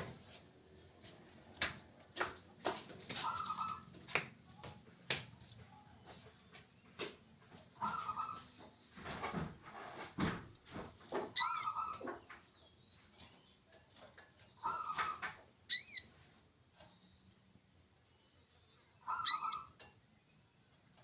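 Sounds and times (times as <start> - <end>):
rustling and scraping: 0.0 - 15.5
small bird chirping: 11.4 - 13.6, 15.7 - 16.2, 18.1 - 19.8.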